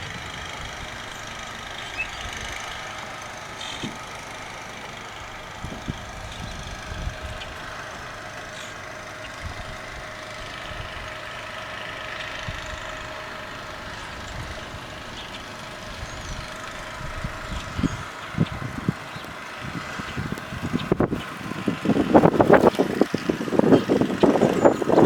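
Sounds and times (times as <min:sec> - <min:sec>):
engine humming steadily: 0:00.0 - 0:25.0.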